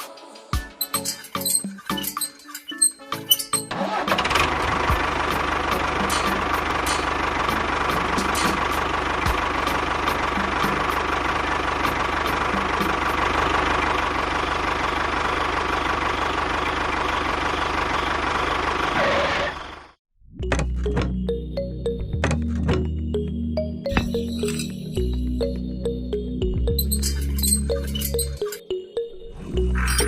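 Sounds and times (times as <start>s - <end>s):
music: 0.0s - 13.5s, 20.2s - 30.0s.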